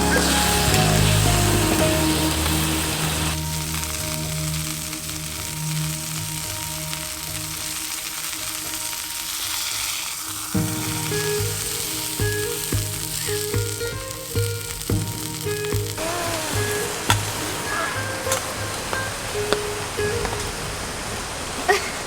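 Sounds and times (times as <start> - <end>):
background music with bass beat: 0.0 - 7.3
food sizzling in hot oil: 0.0 - 20.5.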